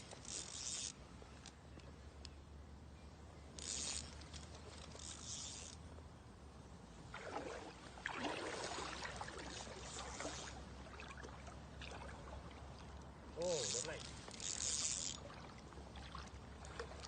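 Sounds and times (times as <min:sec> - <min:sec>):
water splashing and sloshing: 0:07.0 - 0:17.0.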